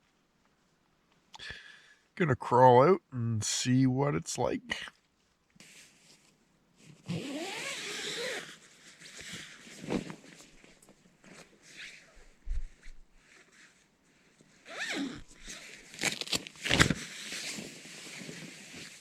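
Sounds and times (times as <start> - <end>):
nylon fabric rustling: 5.8 - 19.0
tent zipper unzipping: 7.0 - 8.6, 14.7 - 17.5.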